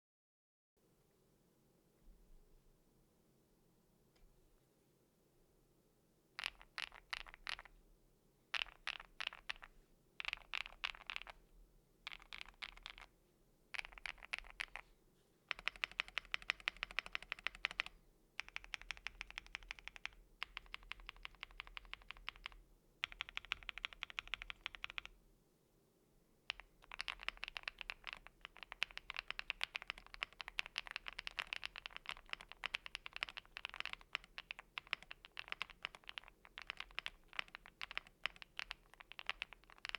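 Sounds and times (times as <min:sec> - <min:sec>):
typing on mechanical keyboard: 0:06.4 - 0:07.7, 0:08.6 - 0:11.4, 0:12.1 - 0:13.1, 0:13.8 - 0:14.8, 0:15.5 - 0:25.2, 0:26.5 - 0:39.9.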